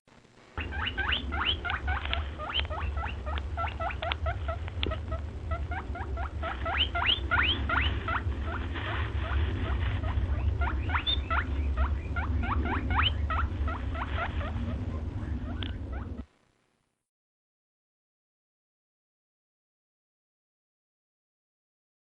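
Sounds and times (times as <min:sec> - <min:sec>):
steady low hum: 0:00.1 - 0:17.0
guinea pig squeaking: 0:00.6 - 0:16.3.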